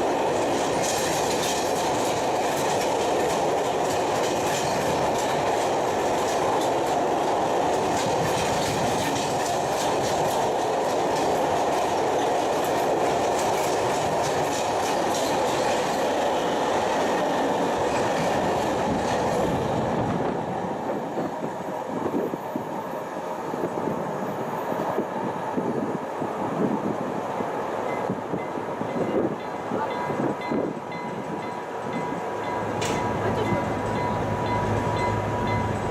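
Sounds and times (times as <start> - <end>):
freight train wheels clattering: 0.0 - 20.3, 27.8 - 35.9
train wagons knocking and clanking: 0.0 - 20.4, 27.8 - 35.9.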